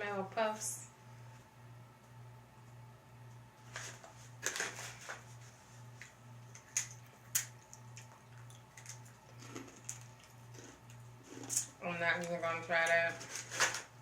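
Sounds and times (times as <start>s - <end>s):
snack packet crinkling: 6.5s - 14.0s.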